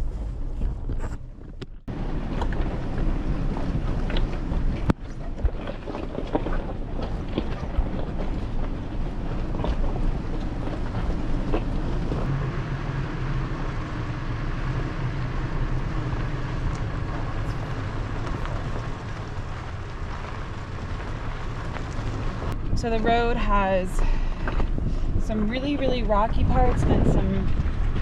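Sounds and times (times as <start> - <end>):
engine hum: 0.0 - 28.0
low road rumble: 0.0 - 28.0
rocks knocking under tires: 14.3 - 23.3.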